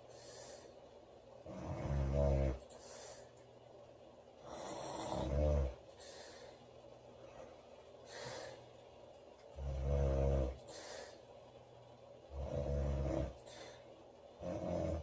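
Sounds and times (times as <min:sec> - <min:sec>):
woman snoring loudly: 0:01.4 - 0:02.6, 0:04.4 - 0:05.8, 0:09.6 - 0:10.6, 0:12.3 - 0:13.4, 0:14.4 - 0:15.0.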